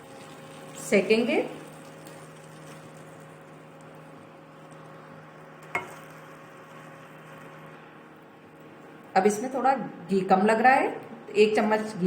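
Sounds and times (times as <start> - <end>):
flour sizzling in a pan: 0.0 - 9.4.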